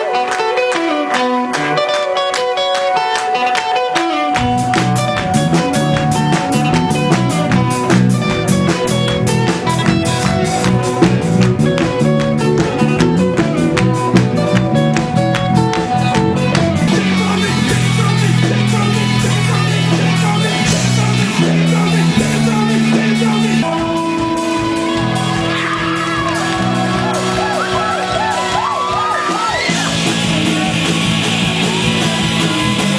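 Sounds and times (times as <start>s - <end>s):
guitar and bass: 0.0s - 32.9s
fast drumbeat: 4.4s - 32.9s.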